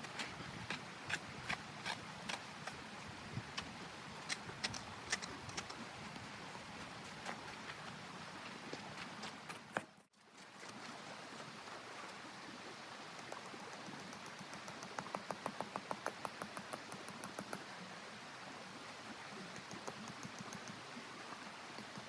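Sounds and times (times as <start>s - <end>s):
sharp crunching clicks: 3.6s - 5.8s.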